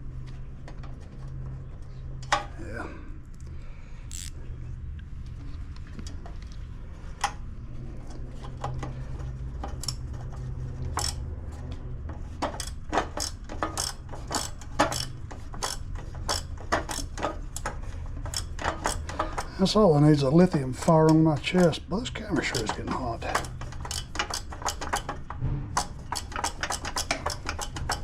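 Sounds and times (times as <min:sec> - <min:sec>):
ratchet wrench clicking: 0:04.1 - 0:04.4, 0:10.9 - 0:11.2, 0:12.5 - 0:17.7, 0:18.3 - 0:19.5, 0:22.6 - 0:25.2, 0:25.8 - 0:28.0.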